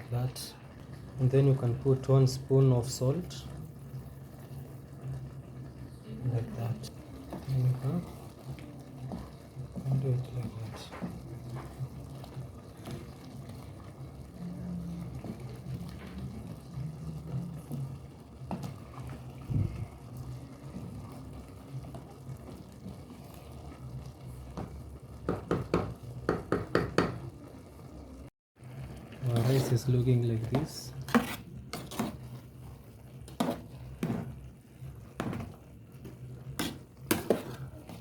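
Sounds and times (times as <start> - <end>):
metal spoon stirring pot: 29.0 - 38.0.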